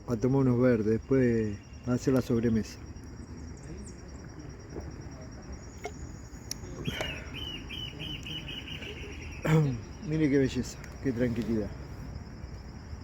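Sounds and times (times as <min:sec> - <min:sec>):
crickets chirring: 0:00.0 - 0:13.0.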